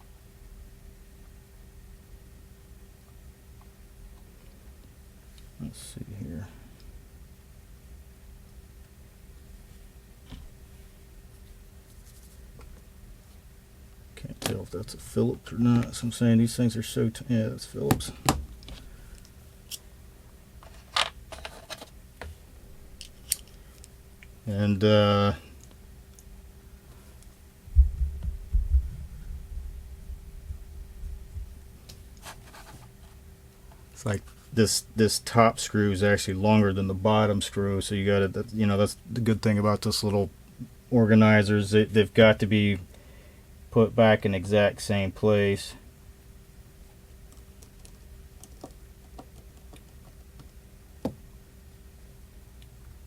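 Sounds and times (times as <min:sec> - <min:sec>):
faint steady hum: 0:00.0 - 0:53.0
low thumps and rumble: 0:27.7 - 0:31.6.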